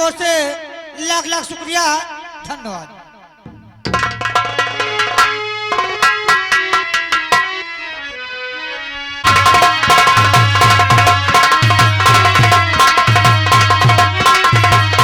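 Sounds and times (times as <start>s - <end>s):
sharp drum strokes: 3.4s - 7.5s
harmonium melody: 4.2s - 15.0s.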